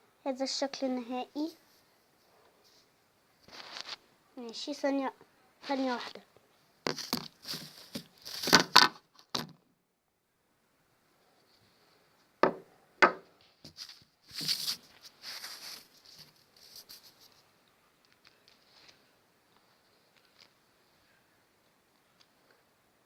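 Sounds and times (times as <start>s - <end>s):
rustling: 1.5s - 4.1s, 5.6s - 9.6s, 13.4s - 20.7s.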